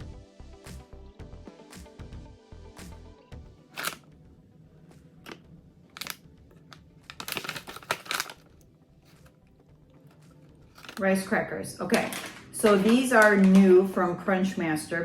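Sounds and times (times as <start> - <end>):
handling rustles and clicks: 3.8 - 4.1, 5.2 - 11.1, 11.9 - 13.9.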